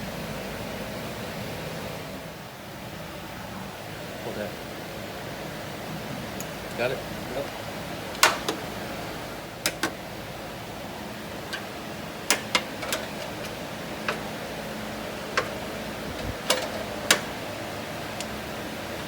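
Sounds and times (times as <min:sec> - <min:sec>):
steady low hum: 0:00.0 - 0:19.0
metal tools clinking: 0:11.5 - 0:17.4.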